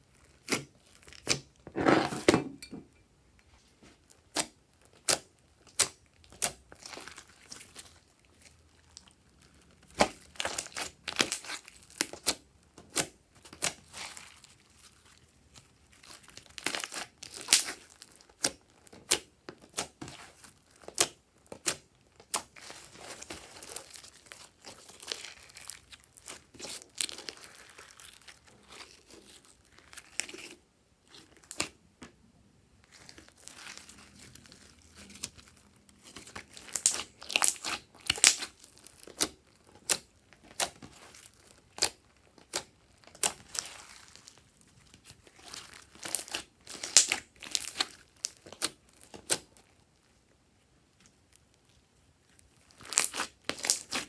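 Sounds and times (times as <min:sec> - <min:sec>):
slime crackling and popping: 0:04.2 - 0:31.8, 0:32.8 - 0:49.8, 0:51.0 - 0:54.0.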